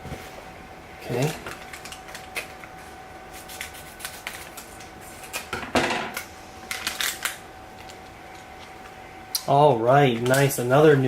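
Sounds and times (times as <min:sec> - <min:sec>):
packaging crinkling: 0:01.2 - 0:02.8, 0:06.6 - 0:08.8.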